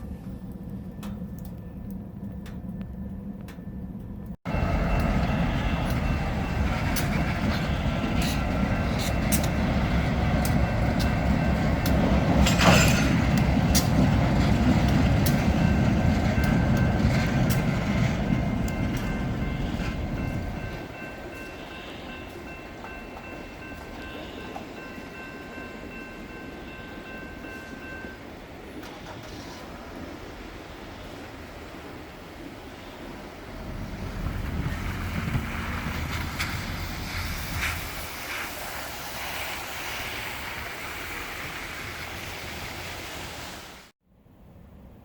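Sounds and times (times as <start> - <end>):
low hum: 0.0 - 20.8
wheels clicking on rails: 0.0 - 26.0, 33.6 - 42.2
train rumbling past: 0.0 - 45.0.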